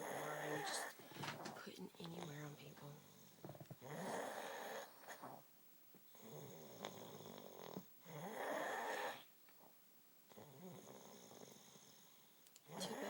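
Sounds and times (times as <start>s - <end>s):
woman snoring: 0.0s - 1.0s, 2.1s - 5.4s, 6.2s - 9.2s, 12.7s - 13.0s.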